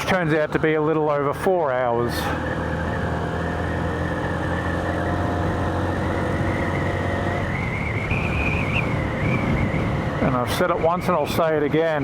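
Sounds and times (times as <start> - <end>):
wind rushing: 5.6 - 10.9
thin steady whistle: 7.5 - 9.7.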